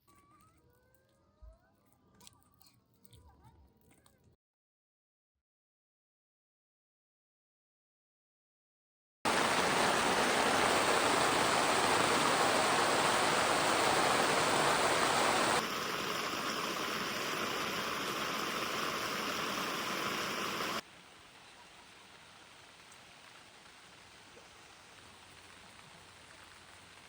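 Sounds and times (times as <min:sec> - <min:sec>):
steady rushing hiss: 0:09.3 - 0:27.0.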